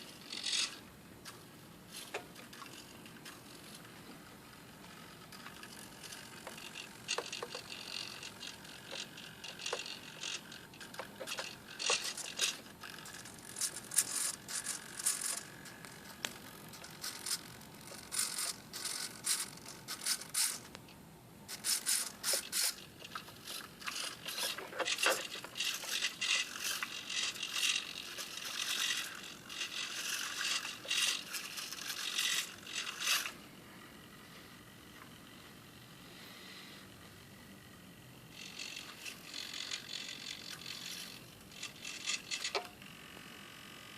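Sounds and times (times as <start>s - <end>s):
servo motors whirring: 21.5s - 33.4s.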